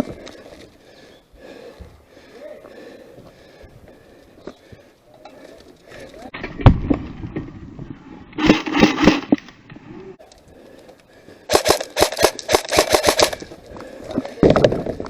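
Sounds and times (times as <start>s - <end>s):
airsoft gun automatic bursts: 11.5s - 13.4s.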